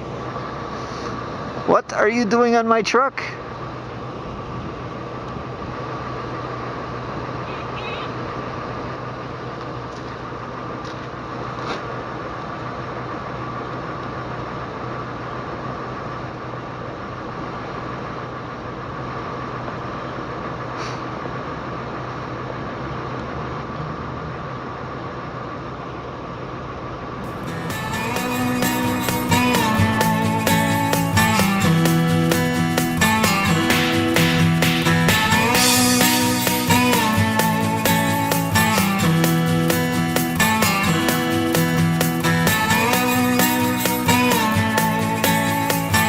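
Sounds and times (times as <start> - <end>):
vehicle engine hum: 0.0 - 46.0
thin whine: 27.2 - 46.0.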